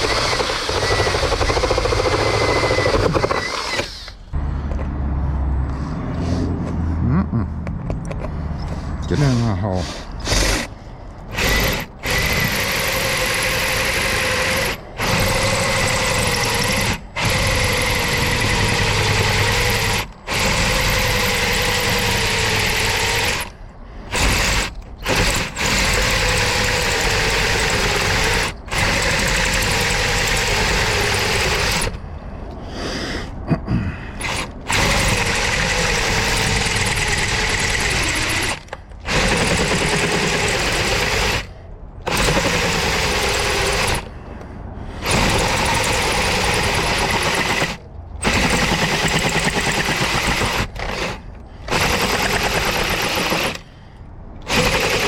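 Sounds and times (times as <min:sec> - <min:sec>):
power drill boring into steel: 0:00.0 - 0:04.2, 0:11.3 - 0:23.5, 0:24.1 - 0:32.0, 0:34.2 - 0:41.5, 0:42.1 - 0:44.1, 0:45.0 - 0:53.7, 0:54.5 - 0:55.0.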